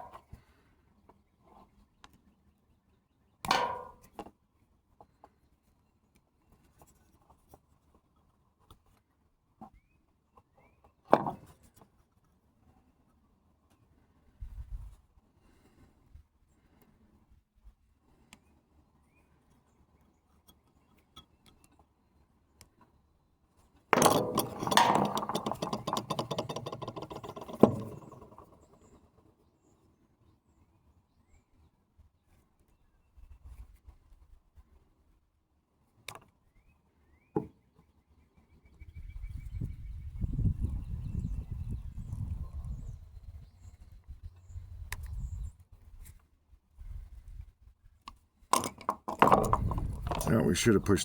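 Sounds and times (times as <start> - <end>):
plug parts clattering: 24.0 - 28.7, 48.6 - 51.0
rapid mechanical rattling: 24.0 - 28.7
small parts clicking and tapping: 24.0 - 28.8, 48.1 - 51.0.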